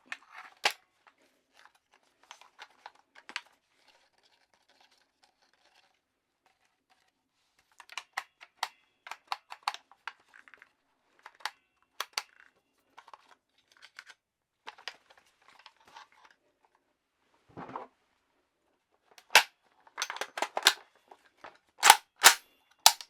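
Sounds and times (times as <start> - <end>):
pistol parts clicking and rattling: 19.2 - 20.8, 21.8 - 23.0.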